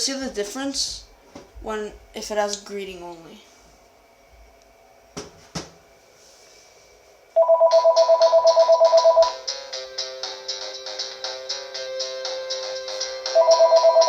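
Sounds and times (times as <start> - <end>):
cordless phone electronic trill: 7.4 - 9.5, 13.2 - 14.0
melodic phone ringtone: 7.4 - 14.0.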